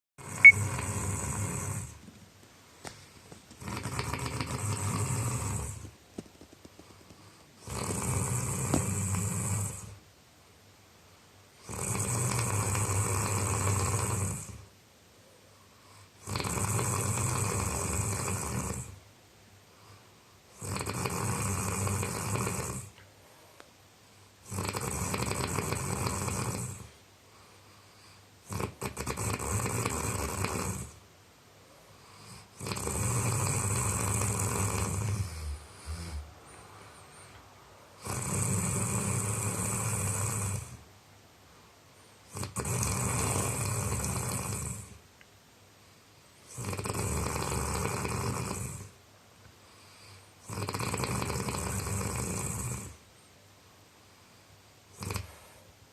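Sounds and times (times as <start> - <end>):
man snoring: 0.2 - 2.0, 3.6 - 5.9, 7.6 - 10.0, 11.6 - 14.7, 16.2 - 19.0, 20.5 - 22.9, 24.4 - 26.9, 28.5 - 31.0, 32.2 - 36.3, 38.0 - 40.8, 42.3 - 45.0, 46.5 - 48.9, 50.4 - 53.0, 54.9 - 55.4
quiet breaths: 0.2 - 10.2, 11.0 - 55.9.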